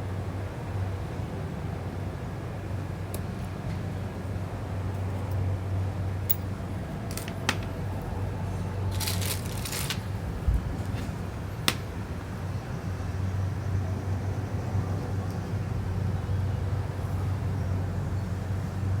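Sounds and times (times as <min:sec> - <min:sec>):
rustle: 0:08.9 - 0:11.8.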